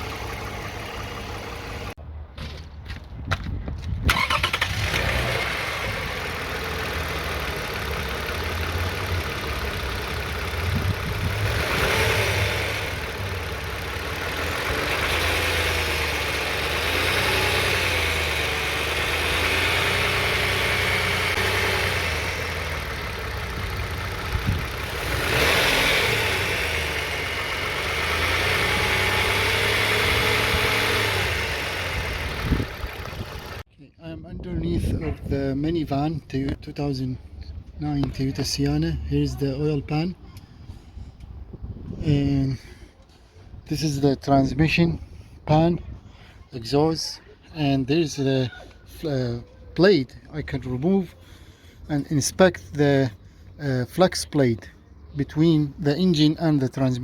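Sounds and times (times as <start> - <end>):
car engine idling: 0.0 - 2.0, 4.1 - 33.6.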